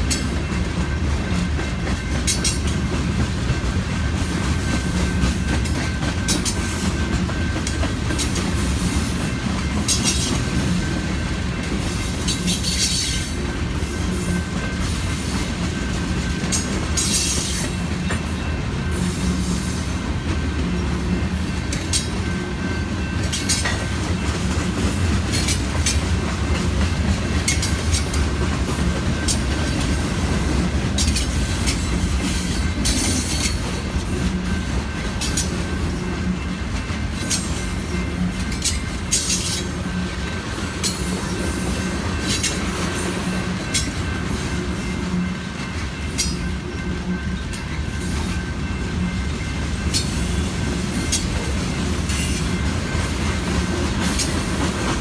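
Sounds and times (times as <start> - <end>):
rail joint clicks: 0.0 - 55.0
train wheels rumbling on rail: 0.0 - 55.0.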